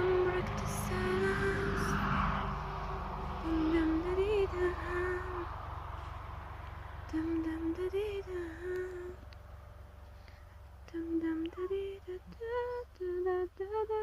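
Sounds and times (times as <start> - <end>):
person humming slow melody: 0.0 - 2.0, 7.1 - 9.3, 10.8 - 14.0
steady low rumble: 0.0 - 14.0.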